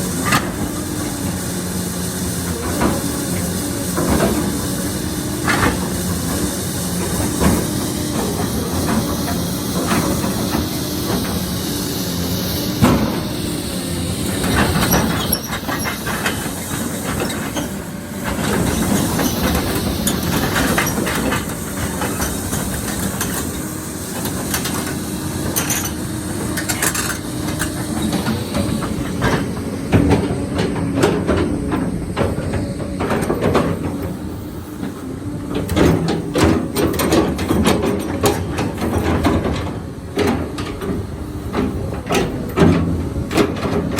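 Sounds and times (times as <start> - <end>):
hiss: 0.0 - 39.4
excavator diesel engine: 0.0 - 43.9
metallic clanks and knocks: 35.6 - 43.9.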